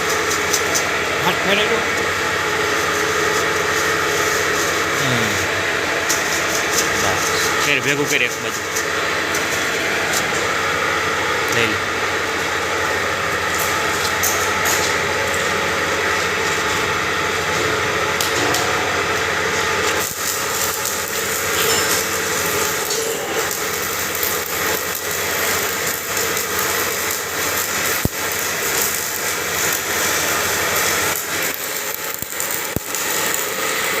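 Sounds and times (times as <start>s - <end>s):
grinding machine running: 0.0s - 34.0s.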